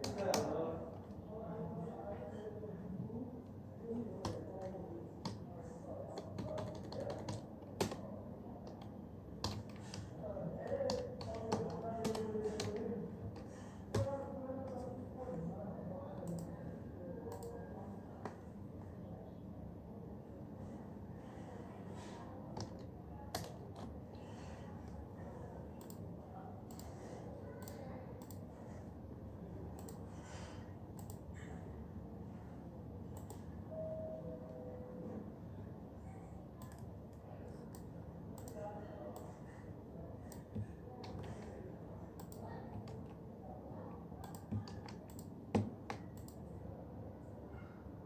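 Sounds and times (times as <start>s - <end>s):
low room hum: 0.0s - 48.0s
keyboard key clicks: 44.2s - 46.4s.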